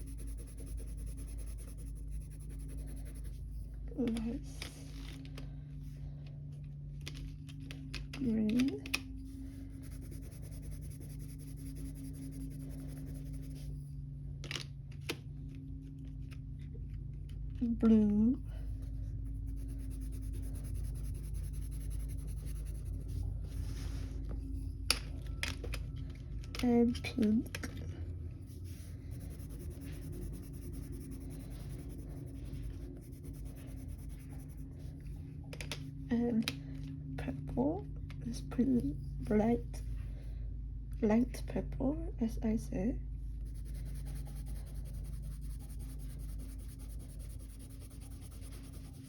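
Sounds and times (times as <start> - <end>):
pencil shading on paper: 0.0 - 3.7, 9.3 - 13.8, 19.2 - 24.2, 28.4 - 34.9, 43.4 - 49.0
steady low hum: 0.0 - 49.0.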